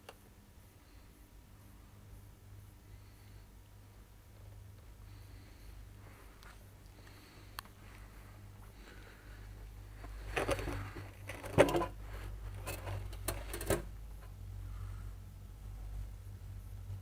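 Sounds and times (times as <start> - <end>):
low steady hum: 0.0 - 17.0
metal parts clanking: 12.6 - 13.9.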